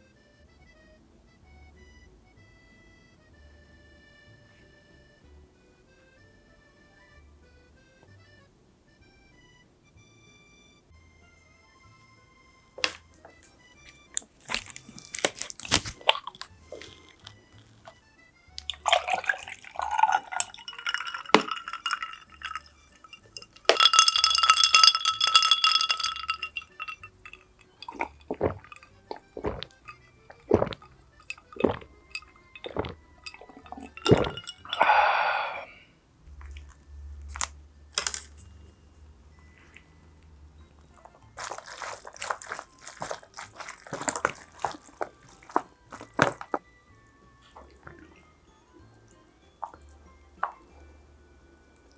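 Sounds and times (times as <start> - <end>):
wet food handling sounds: 12.8 - 35.1, 36.3 - 50.9.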